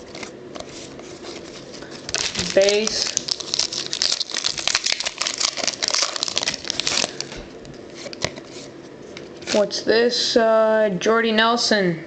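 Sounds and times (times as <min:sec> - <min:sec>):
foil wrapper crinkling: 0:00.0 - 0:09.6.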